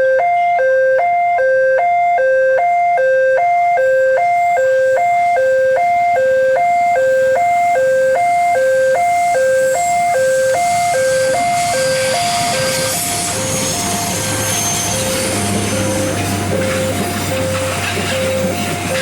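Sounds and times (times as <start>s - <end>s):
level crossing warning alarm: 0.0s - 19.0s
approaching train rumble: 6.7s - 19.0s.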